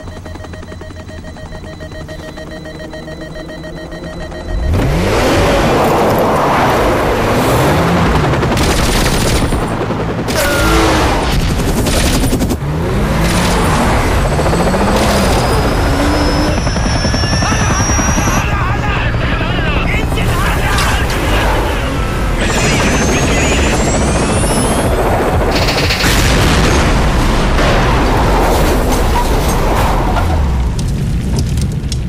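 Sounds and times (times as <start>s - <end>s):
steady mechanical drone: 0.0s - 29.0s
car engine revving hard: 4.6s - 8.1s
gunfire: 8.5s - 13.9s, 25.5s - 28.9s.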